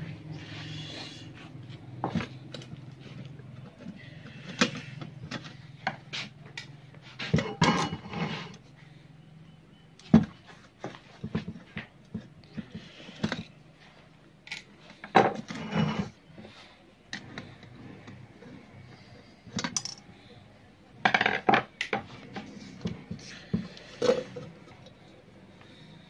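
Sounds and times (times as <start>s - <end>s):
metal parts clinking and tapping: 19.6s - 20.1s.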